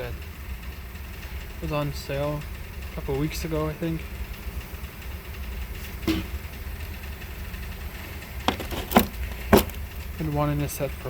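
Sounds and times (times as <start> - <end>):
steady low hum: 0.0 - 11.0
hand tools clacking: 8.3 - 9.8.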